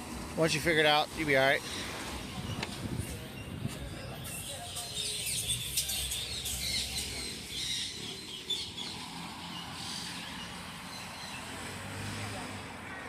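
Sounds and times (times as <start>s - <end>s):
birds chirping and squawking: 1.3s - 11.6s.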